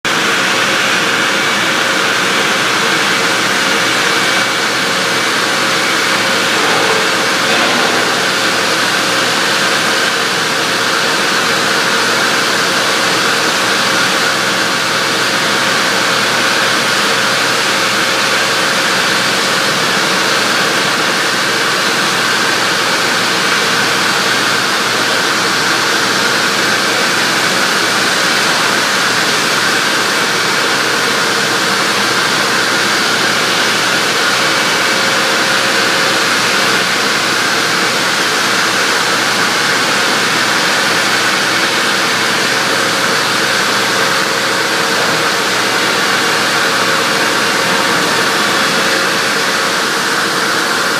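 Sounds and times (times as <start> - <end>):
band saw cutting log: 3.1 - 15.0, 38.8 - 50.9.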